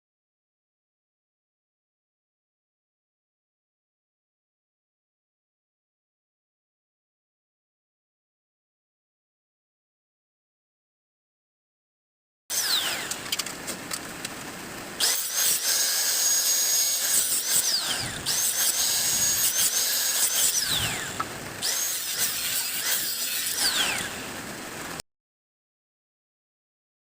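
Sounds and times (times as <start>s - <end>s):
power tool grinding: 12.5s - 14.0s, 15.0s - 24.8s.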